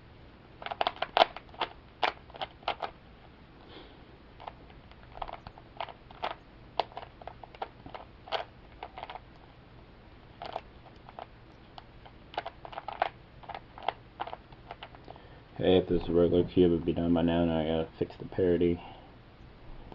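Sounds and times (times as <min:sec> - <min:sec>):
puzzle cube clicking: 0:00.6 - 0:02.9, 0:04.4 - 0:09.4, 0:10.4 - 0:15.2.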